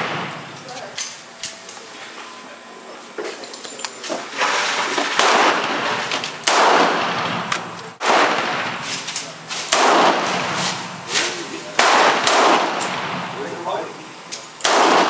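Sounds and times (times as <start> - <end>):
gunshots echoing: 0.0 - 0.5, 5.0 - 11.0, 11.7 - 13.5, 14.6 - 15.0.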